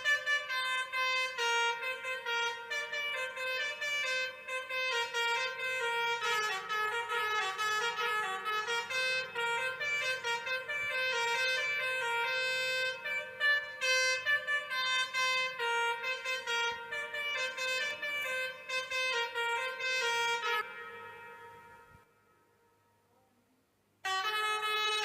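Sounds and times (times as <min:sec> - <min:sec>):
melodica melody: 0:00.0 - 0:21.9.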